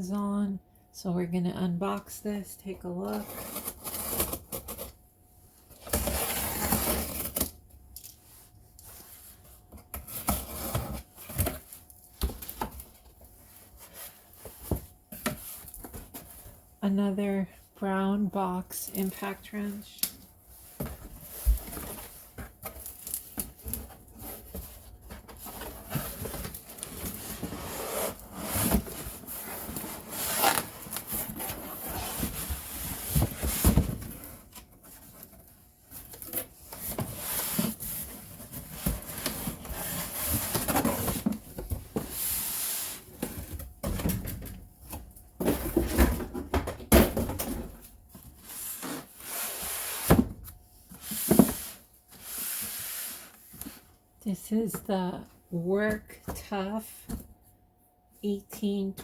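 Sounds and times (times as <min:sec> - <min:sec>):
cardboard rubbing and scraping: 0:06.0 - 0:07.4, 0:23.8 - 0:35.4.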